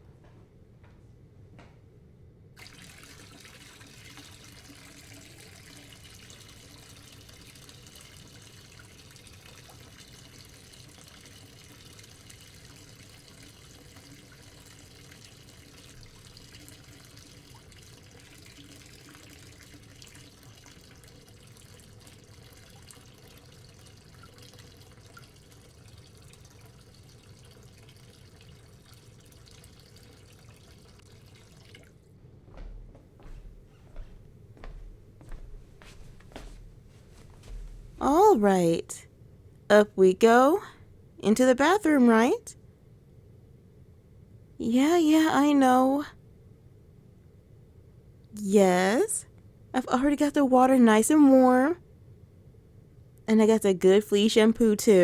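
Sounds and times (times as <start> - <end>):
tap filling bathtub with water: 2.6 - 38.0.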